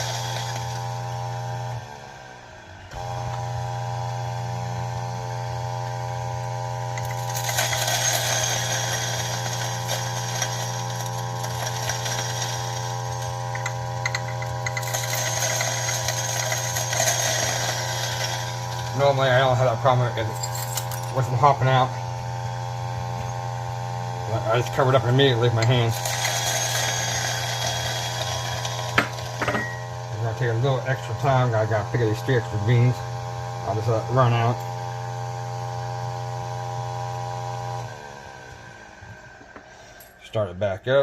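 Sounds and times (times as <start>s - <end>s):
coffee beans crackling in grinder: 0.0s - 1.8s, 6.7s - 23.6s, 24.3s - 34.8s
coffee grinder motor humming: 0.0s - 40.0s.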